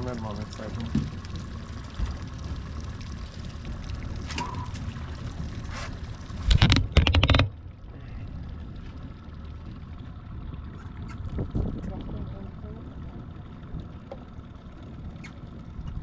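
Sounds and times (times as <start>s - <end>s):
fishing boat engine rumble: 0.0s - 16.0s
rapid clicking and knocking: 6.5s - 7.5s.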